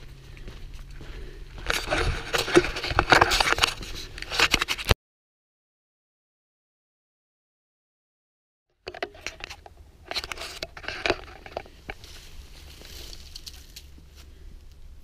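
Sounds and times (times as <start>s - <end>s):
steady low rumble: 0.0s - 3.1s
rustling and crunching: 1.6s - 5.0s, 8.9s - 15.0s.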